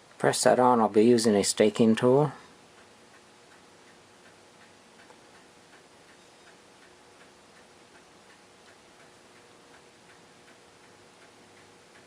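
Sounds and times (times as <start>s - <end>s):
low room hum: 0.0s - 12.0s
mechanical clock ticking: 0.0s - 12.0s.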